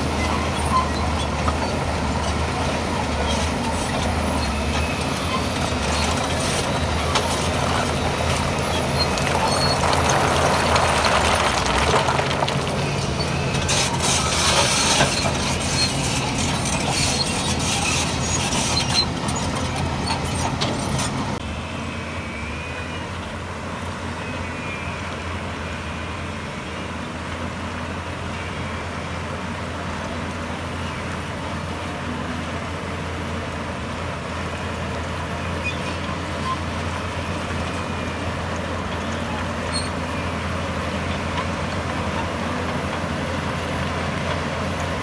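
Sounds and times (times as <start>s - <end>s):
diesel machinery engine: 0.0s - 45.0s
clattering and scraping: 0.3s - 21.4s.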